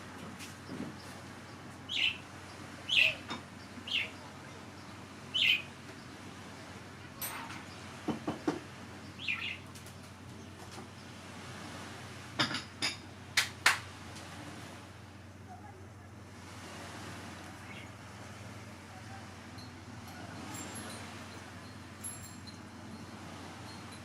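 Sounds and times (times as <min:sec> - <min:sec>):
bird chirps: 0:01.9 - 0:02.2, 0:02.9 - 0:04.2, 0:05.3 - 0:05.7, 0:09.0 - 0:09.6.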